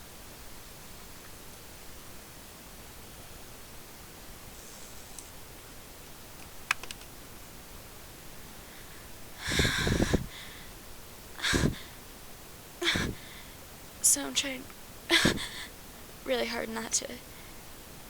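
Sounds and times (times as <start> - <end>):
faint click: 4.7 - 5.4, 6.4 - 7.1.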